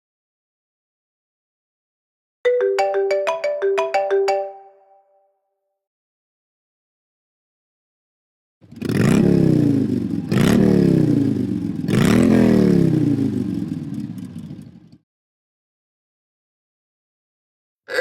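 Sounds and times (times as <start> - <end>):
engine revving ringtone: 2.5 - 4.9.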